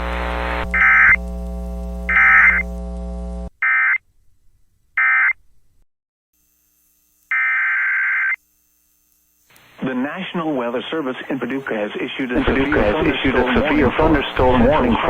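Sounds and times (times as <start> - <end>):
steady mains hum: 0.0 - 3.5, 8.4 - 15.0
harsh digital data buzzes: 0.0 - 4.0, 6.4 - 9.9, 10.6 - 15.0.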